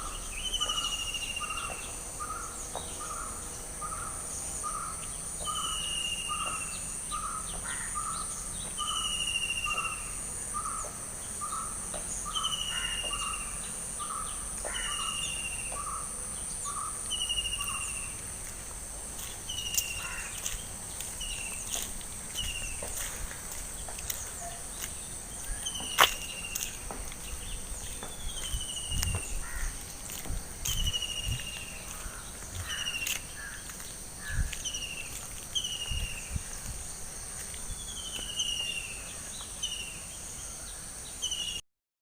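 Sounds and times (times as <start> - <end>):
soft low thumps: 26.8 - 32.8.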